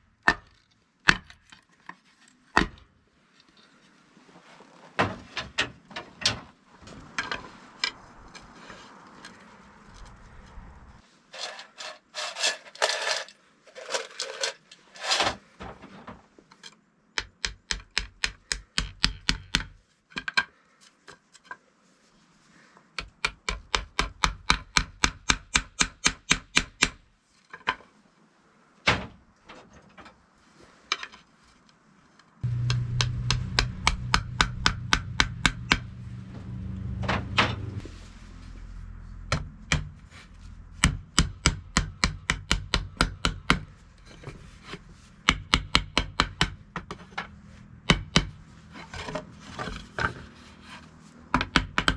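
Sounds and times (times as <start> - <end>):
power tool humming: 32.4 - 37.8
hammer blows: 32.4 - 47.0.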